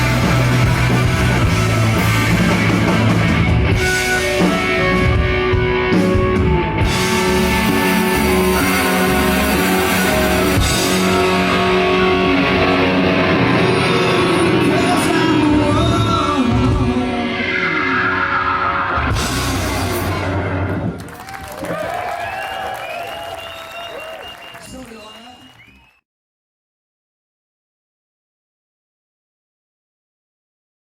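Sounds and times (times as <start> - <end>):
drum kit: 0.0 - 17.1, 19.0 - 22.0
electric guitar: 0.0 - 21.8
person singing: 13.6 - 18.1.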